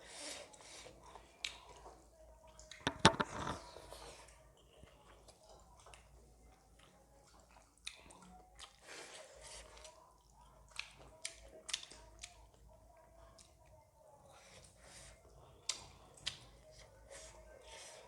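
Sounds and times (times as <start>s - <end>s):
person chewing food: 0.2s - 13.7s, 14.3s - 18.0s.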